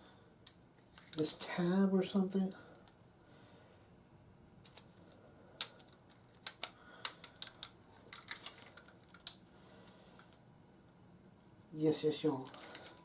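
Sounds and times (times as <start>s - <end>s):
plastic toy parts clicking: 5.6s - 9.4s.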